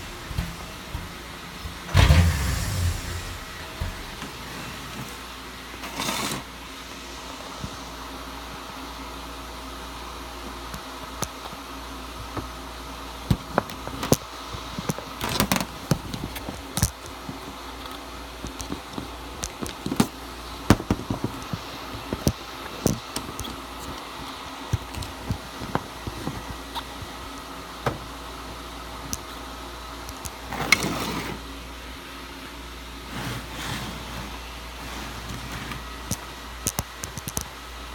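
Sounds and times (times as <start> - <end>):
sharp clicks and knocks: 0.0 - 4.4
brief rushing noise: 0.0 - 4.9.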